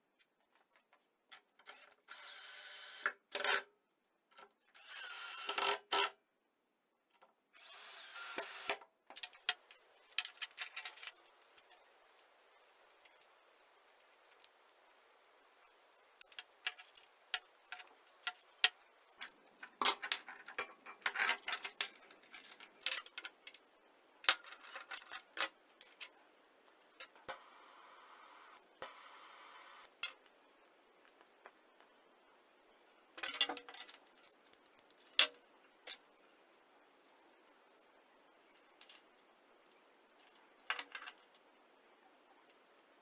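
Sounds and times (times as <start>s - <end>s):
small parts clicking and clattering: 0.2s - 3.7s, 7.1s - 26.2s, 33.2s - 36.2s, 38.6s - 41.5s.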